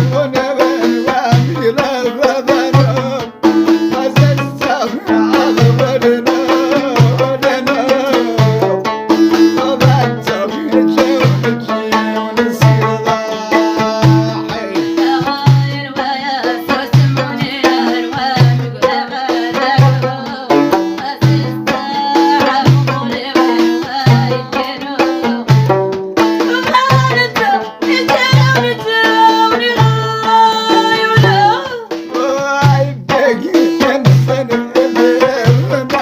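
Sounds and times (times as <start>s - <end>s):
folk instrumental melody: 0.0s - 36.0s
low drum beat: 0.0s - 36.0s.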